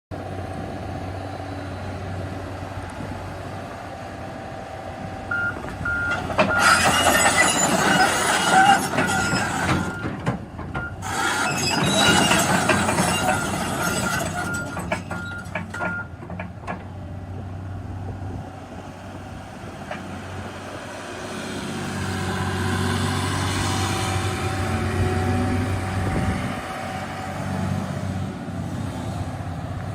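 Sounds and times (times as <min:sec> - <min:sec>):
excavator diesel engine running: 0:00.2 - 0:29.9
metal squeals and clanks: 0:06.1 - 0:16.1.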